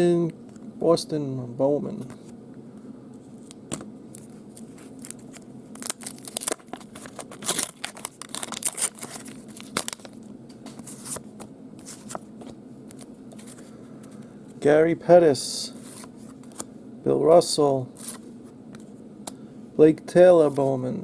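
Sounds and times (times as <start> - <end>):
paper and card rustling: 4.1 - 13.7, 15.7 - 16.7, 18.0 - 18.9.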